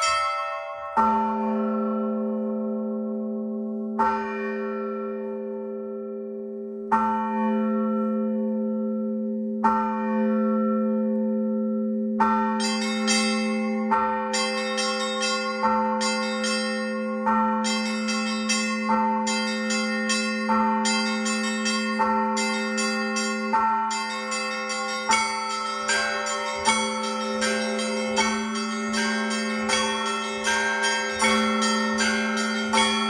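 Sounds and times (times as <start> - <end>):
church bells pealing: 0.0 - 33.0.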